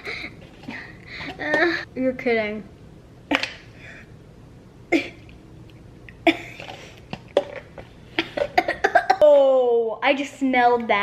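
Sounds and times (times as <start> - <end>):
girl coughing: 4.9 - 5.3, 6.2 - 6.7, 8.4 - 9.3.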